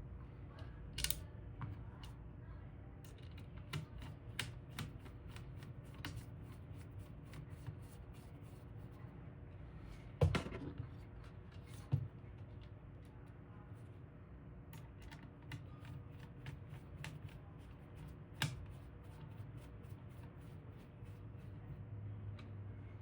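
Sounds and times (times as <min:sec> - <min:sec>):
small hardware clicking: 0:01.0 - 0:01.2.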